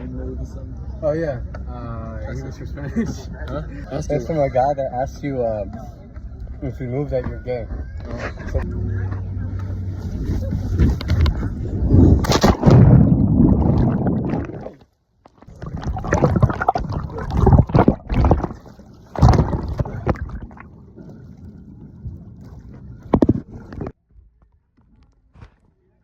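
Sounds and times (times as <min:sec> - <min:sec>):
seawater sloshing and gurgling: 0:09.7 - 0:24.0.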